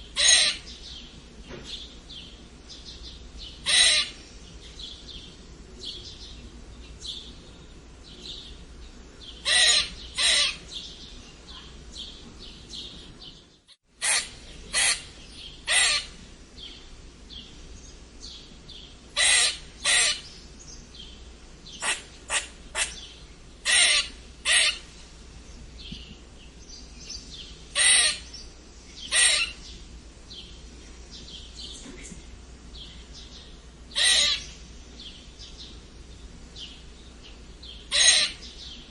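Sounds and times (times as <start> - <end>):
squirrel squeaking: 0.1 - 0.7, 3.6 - 4.2, 9.4 - 10.6, 14.0 - 16.2, 19.2 - 20.3, 21.8 - 24.8, 27.8 - 28.4, 29.1 - 29.6, 33.9 - 34.5, 37.9 - 38.5.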